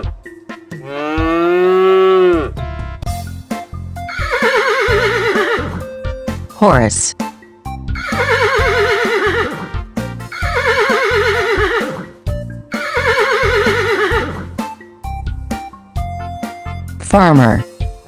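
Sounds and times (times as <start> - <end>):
children's background music: 0.0 - 18.0
horse whinnying: 4.1 - 5.9, 8.0 - 14.6.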